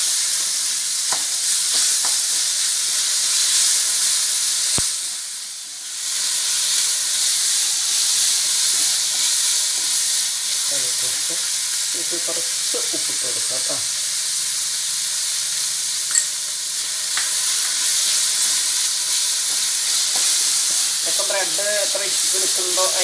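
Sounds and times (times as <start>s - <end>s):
vegetables sizzling in a pan: 0.0s - 23.0s
spoon stirring in a pan: 16.1s - 20.9s.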